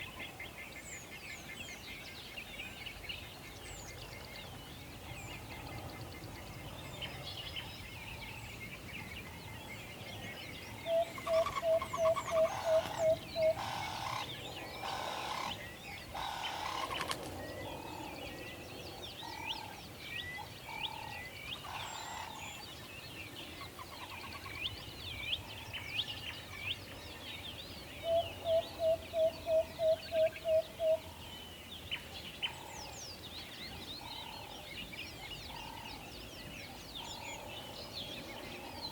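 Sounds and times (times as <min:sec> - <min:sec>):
small birds chirping: 0:00.0 - 0:38.9
owl hooting: 0:10.8 - 0:15.6.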